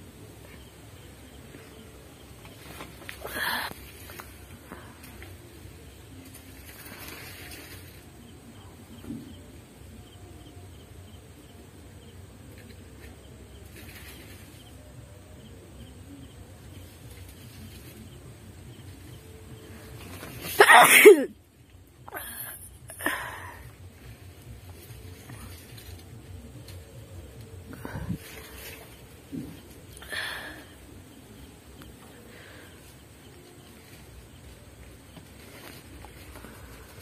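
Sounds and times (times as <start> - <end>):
woman sneezing: 20.6 - 21.3.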